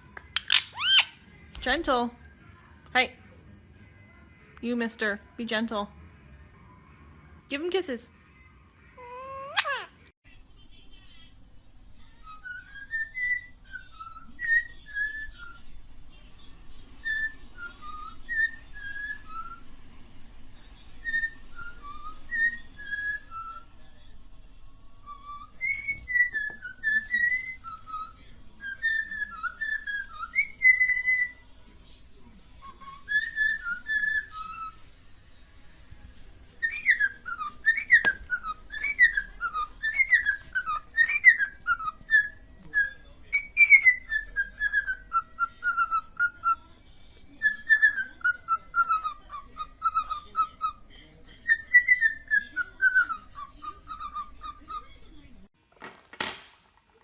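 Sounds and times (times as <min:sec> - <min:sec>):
parrot whistling: 0:00.4 - 0:01.2, 0:09.0 - 0:10.0, 0:12.3 - 0:15.6, 0:25.0 - 0:31.4, 0:32.6 - 0:34.8, 0:36.6 - 0:46.6, 0:47.4 - 0:50.8, 0:51.4 - 0:54.9.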